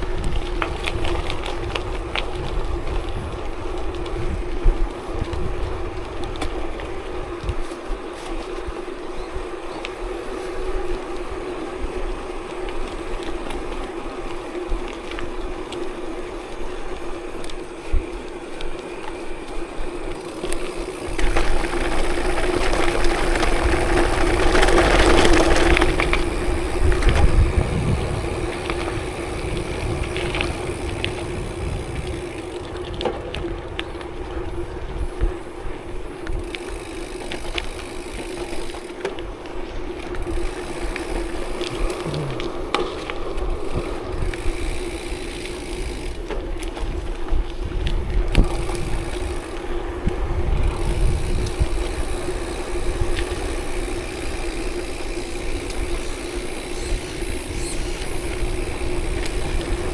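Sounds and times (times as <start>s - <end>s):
vehicle riding on dirt road: 0.0s - 59.9s
rushing rattling noise: 20.9s - 34.8s.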